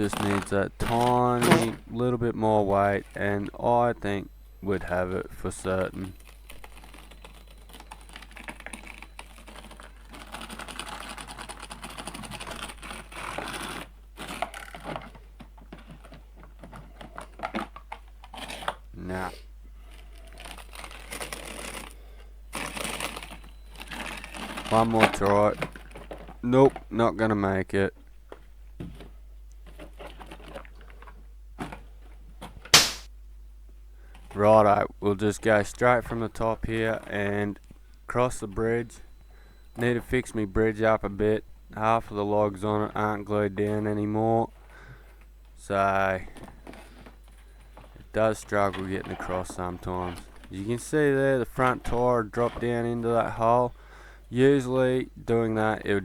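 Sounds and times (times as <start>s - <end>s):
tyres scrabbling and rattling: 22.6s - 26.9s.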